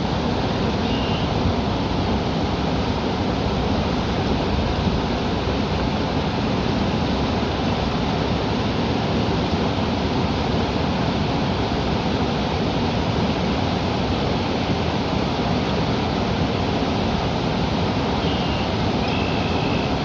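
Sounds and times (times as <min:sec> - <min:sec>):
river water rushing: 0:00.0 - 0:20.0
faint bird note: 0:18.2 - 0:20.0.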